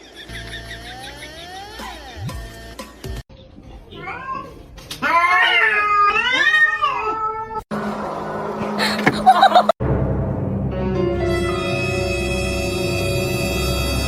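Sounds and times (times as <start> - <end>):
cat meowing: 3.9 - 7.6.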